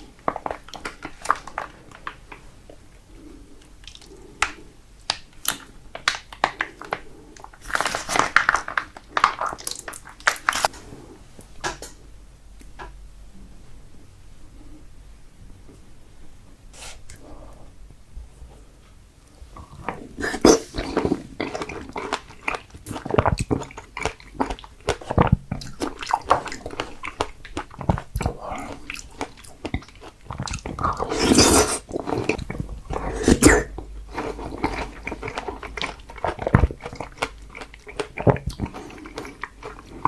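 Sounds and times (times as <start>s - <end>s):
wet chewing of strawberries: 19.7s - 40.0s.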